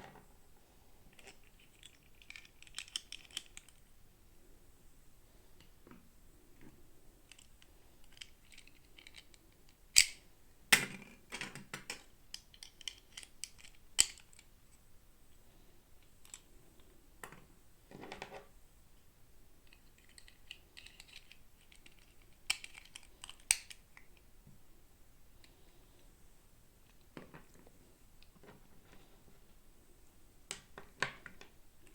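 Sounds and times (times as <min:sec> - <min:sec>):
plastic toy packaging clicks and taps: 0:10.8 - 0:14.4, 0:19.7 - 0:24.1.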